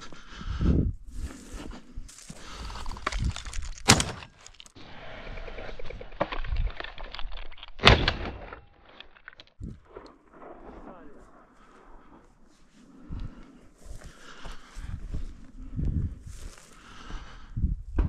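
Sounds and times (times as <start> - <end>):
footsteps crunching in snow: 1.1 - 3.8, 16.2 - 17.1.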